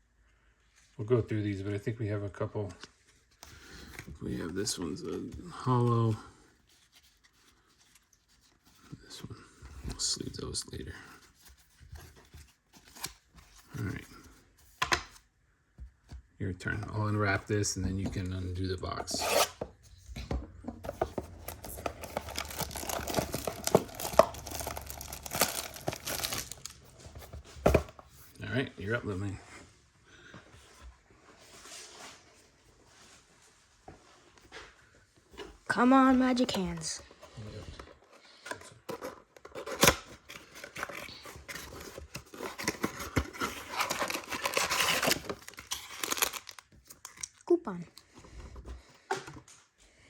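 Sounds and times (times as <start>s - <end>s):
cardboard scraping and tearing: 19.1s - 19.6s, 20.9s - 27.0s, 39.6s - 46.6s
plastic wrap crinkling: 20.9s - 27.0s, 40.7s - 47.4s.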